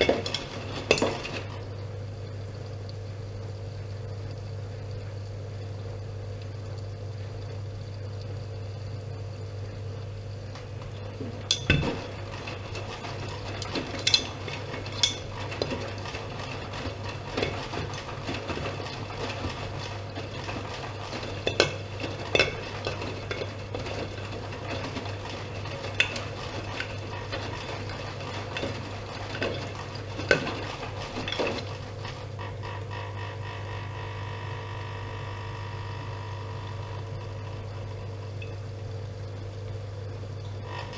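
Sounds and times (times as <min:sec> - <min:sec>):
clinks and knocks in drum: 0:00.0 - 0:01.5, 0:11.2 - 0:31.8
washing machine humming: 0:00.0 - 0:40.9.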